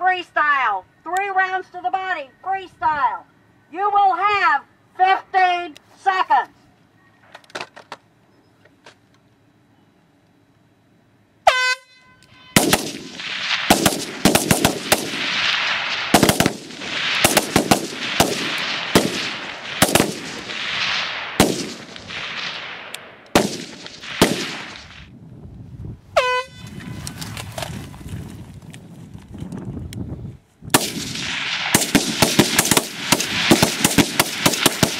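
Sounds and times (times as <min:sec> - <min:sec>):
rifles firing rapid shots: 0:12.6 - 0:25.0, 0:30.8 - 0:34.9.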